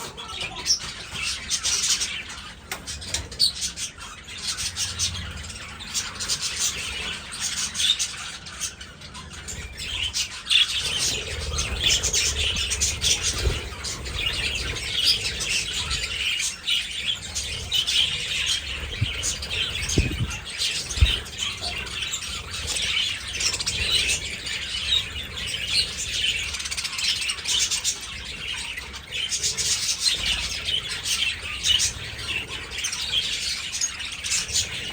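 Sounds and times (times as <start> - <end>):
budgerigars chattering and chirping: 0.0 - 34.9
low thumps: 18.8 - 21.4.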